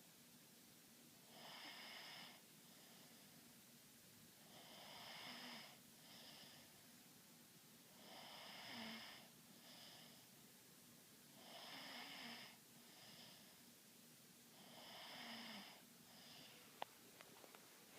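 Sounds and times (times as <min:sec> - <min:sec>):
faint snoring: 0:01.2 - 0:03.4, 0:04.4 - 0:06.8, 0:07.9 - 0:10.3, 0:11.3 - 0:13.6, 0:14.5 - 0:16.8.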